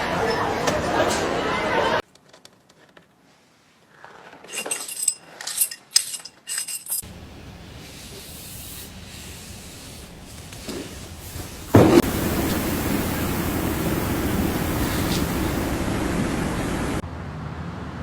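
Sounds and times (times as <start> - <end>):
steady hiss: 7.0 - 17.0.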